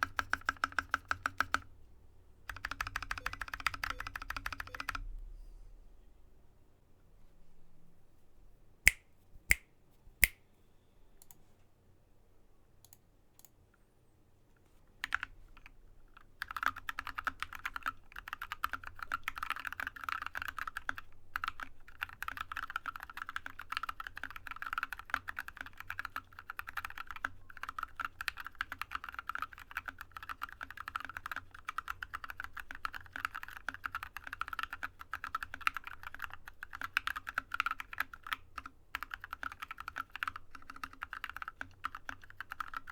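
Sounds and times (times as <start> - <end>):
mechanical keyboard typing: 0.0 - 1.7, 2.5 - 5.0, 15.0 - 42.9.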